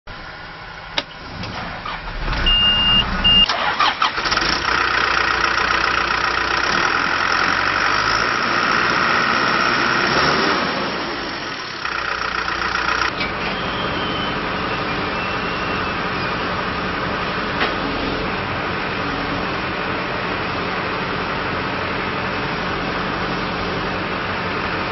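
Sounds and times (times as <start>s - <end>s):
diesel engine starting and idling: 0.1s - 24.9s
high beep: 2.4s - 3.5s.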